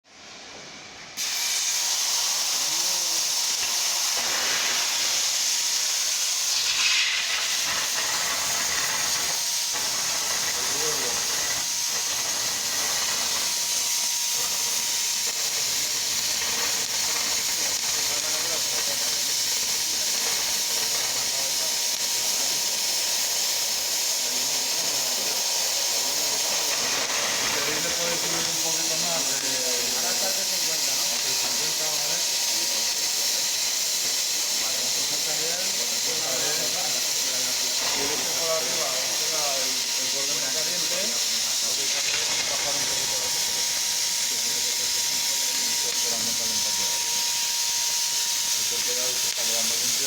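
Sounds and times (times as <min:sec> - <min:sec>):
cutting torch hissing: 0:00.9 - 0:50.0.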